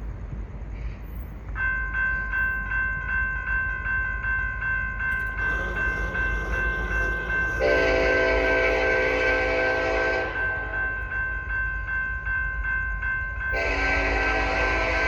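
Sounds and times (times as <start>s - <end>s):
railroad crossing bell ringing: 1.0s - 15.0s
locomotive air horn: 5.4s - 10.8s, 13.6s - 15.0s.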